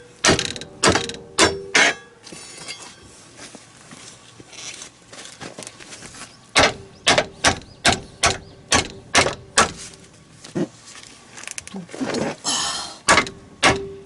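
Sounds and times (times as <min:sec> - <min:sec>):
hammer striking metal: 0:00.2 - 0:02.2, 0:13.1 - 0:14.0.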